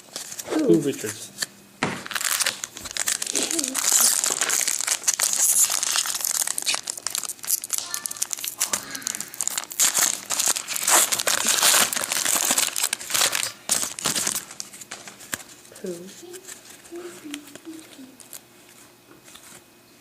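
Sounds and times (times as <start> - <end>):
foil wrapper crinkling: 2.0 - 19.6.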